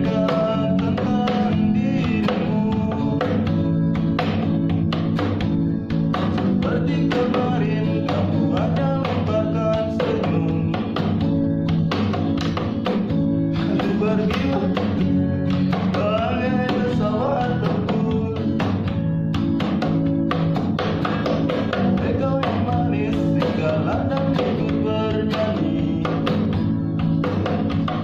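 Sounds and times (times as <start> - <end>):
guitar strumming: 0.0 - 28.0.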